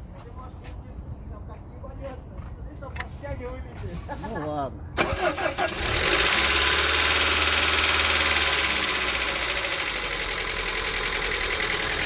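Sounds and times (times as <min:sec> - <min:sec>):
car engine idling with knock: 0:06.2 - 0:12.0.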